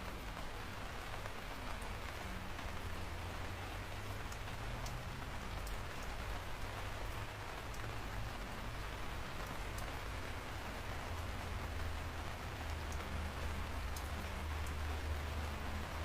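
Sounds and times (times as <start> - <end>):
steady rain hiss: 0.0 - 16.0.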